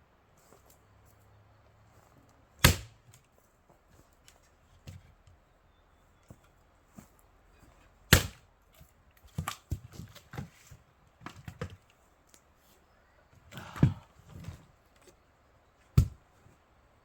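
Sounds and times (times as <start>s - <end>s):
axe striking logs: 2.6s - 3.2s, 8.1s - 8.5s, 9.3s - 10.4s, 13.5s - 14.1s, 15.9s - 16.2s.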